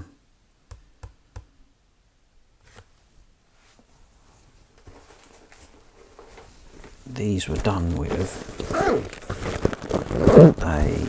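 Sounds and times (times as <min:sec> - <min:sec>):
soft rustling of objects: 0:02.6 - 0:11.0.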